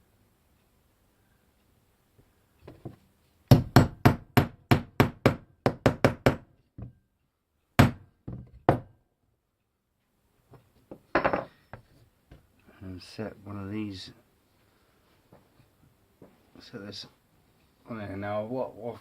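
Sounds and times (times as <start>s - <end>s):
hammer striking wood: 3.5s - 7.0s, 7.8s - 8.9s.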